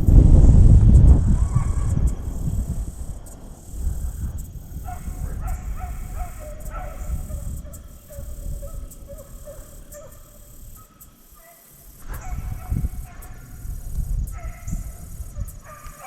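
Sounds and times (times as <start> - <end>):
hounds barking faintly: 1.3 - 2.3, 4.7 - 13.7, 14.3 - 16.0.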